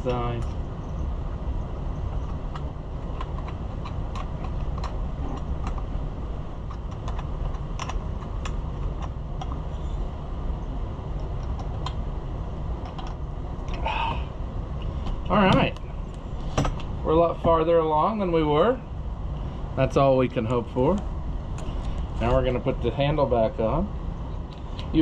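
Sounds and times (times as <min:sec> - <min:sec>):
low background rumble: 0:00.0 - 0:25.0.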